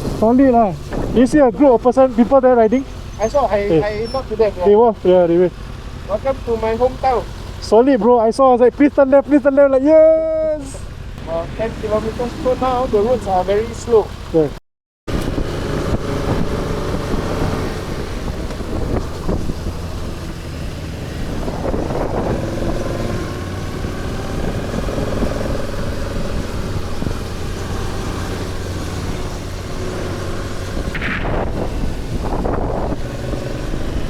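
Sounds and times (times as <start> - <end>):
wind noise on microphone: 0.0 - 1.8, 15.1 - 34.0
road noise: 0.0 - 34.0
motorcycle engine running: 10.4 - 34.0.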